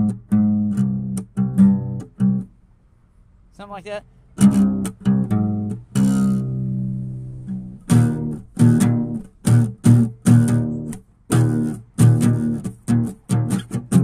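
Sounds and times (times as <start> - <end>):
guitar chords strummed: 0.0 - 2.5, 4.4 - 14.0.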